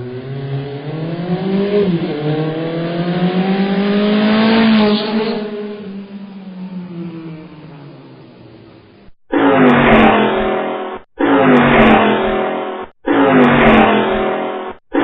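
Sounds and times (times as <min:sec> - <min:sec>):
racing car engine accelerating: 0:00.0 - 0:09.1.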